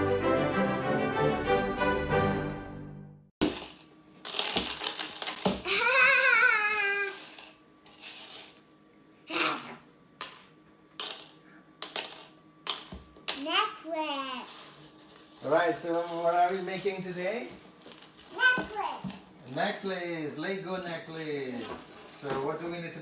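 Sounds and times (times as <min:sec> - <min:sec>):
intro music: 0:00.0 - 0:03.2
clatter of small hard pieces: 0:03.4 - 0:08.6, 0:10.2 - 0:13.4, 0:14.5 - 0:18.7
child's wavering voice: 0:05.6 - 0:07.3, 0:09.3 - 0:09.8, 0:13.4 - 0:14.7, 0:18.3 - 0:19.1.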